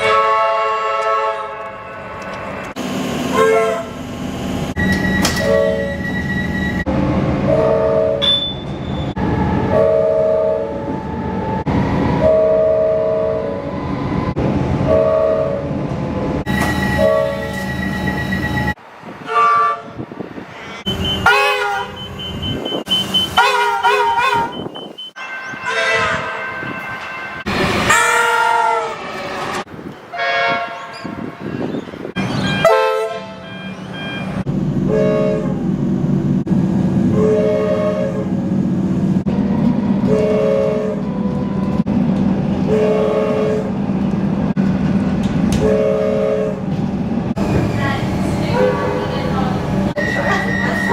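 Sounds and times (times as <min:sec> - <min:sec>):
electric train horn blasts: 0:00.0 - 0:01.9, 0:03.3 - 0:04.0, 0:16.5 - 0:17.7, 0:19.3 - 0:29.0, 0:30.1 - 0:31.5, 0:32.3 - 0:35.7, 0:37.1 - 0:38.4, 0:40.0 - 0:41.4, 0:42.6 - 0:43.8, 0:45.6 - 0:46.7
running train hum: 0:00.0 - 0:50.9.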